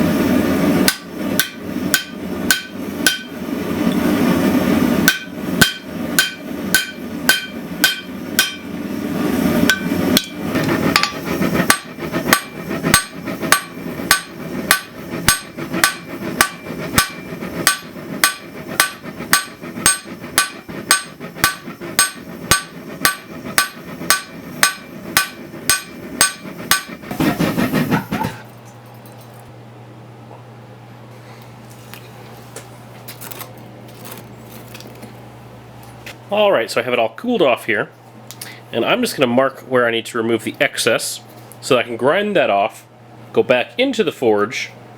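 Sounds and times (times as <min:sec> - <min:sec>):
hammer striking steel on anvil: 0:00.8 - 0:04.1, 0:05.0 - 0:08.7, 0:09.6 - 0:27.0.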